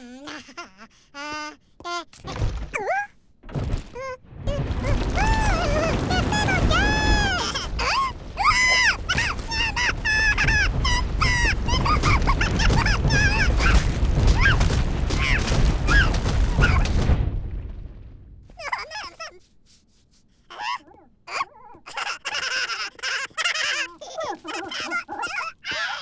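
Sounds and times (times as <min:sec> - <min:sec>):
squeaky babbling voices: 0:00.0 - 0:03.1, 0:04.0 - 0:17.0, 0:18.6 - 0:19.4, 0:20.5 - 0:26.0
low rumble: 0:03.6 - 0:18.6.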